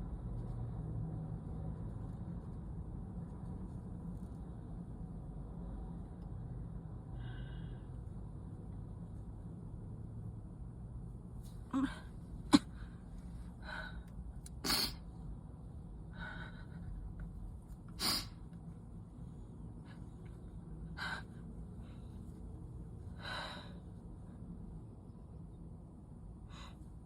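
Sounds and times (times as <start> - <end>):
person sniffling: 18.0 - 18.3.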